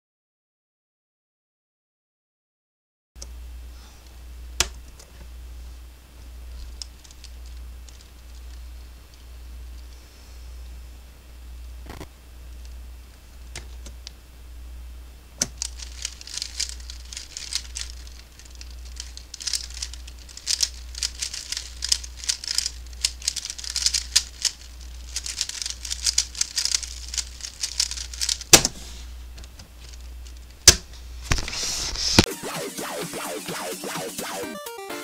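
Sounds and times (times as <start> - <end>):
low steady hum: 3.2 - 32.2
puzzle cube clicking: 15.4 - 28.8.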